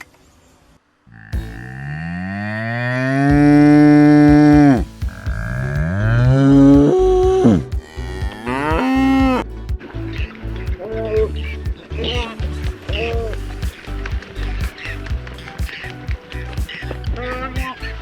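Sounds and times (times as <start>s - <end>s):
cow mooing: 1.1s - 9.4s.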